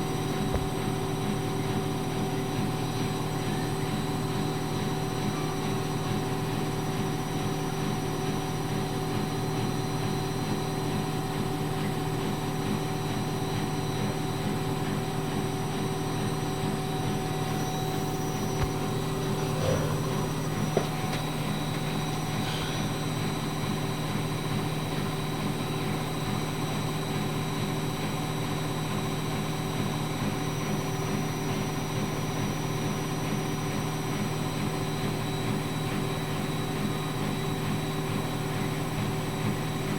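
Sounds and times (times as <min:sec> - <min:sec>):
washing machine motor hum: 0:15.0 - 0:23.1.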